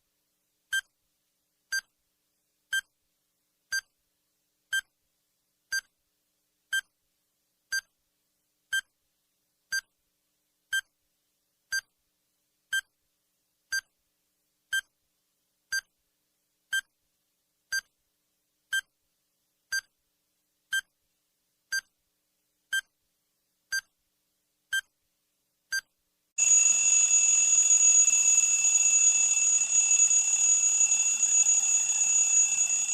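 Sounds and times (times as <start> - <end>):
loud continuous alarm ring: 26.4 - 32.9
short high timer beeps: 26.4 - 32.9.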